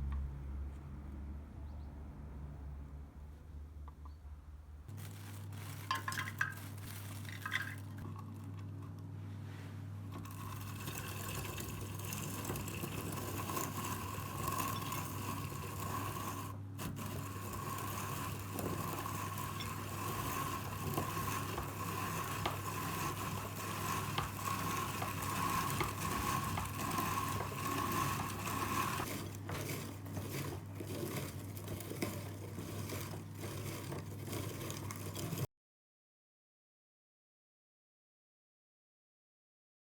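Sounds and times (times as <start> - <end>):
rotary grater metal scraping: 4.9 - 7.8, 10.2 - 35.5.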